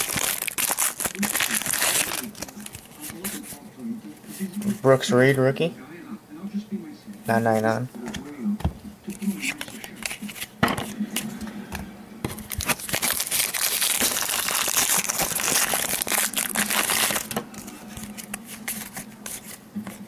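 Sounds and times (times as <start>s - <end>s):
foil wrapper crinkling and tearing: 0.0s - 3.5s, 12.4s - 19.6s.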